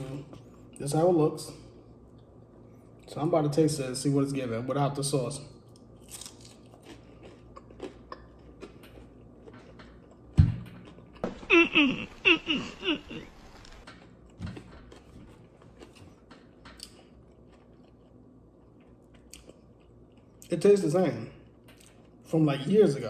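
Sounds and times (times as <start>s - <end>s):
chewing crunches: 5.6s - 11.5s, 13.0s - 20.6s, 21.4s - 22.3s
thump: 10.4s - 11.5s.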